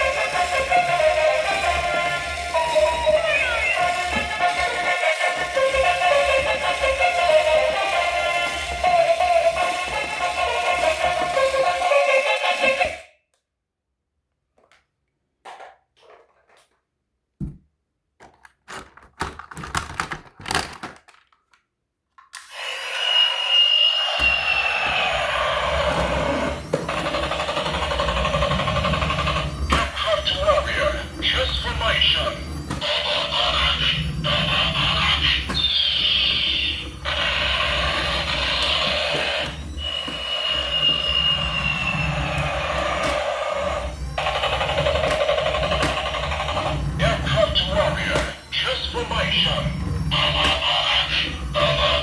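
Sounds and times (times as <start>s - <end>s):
toy motor noise: 0.0s - 13.0s, 22.4s - 52.0s
plastic toys clattering: 15.4s - 16.9s, 18.2s - 22.5s
whirring with falling whistle: 22.6s - 52.0s.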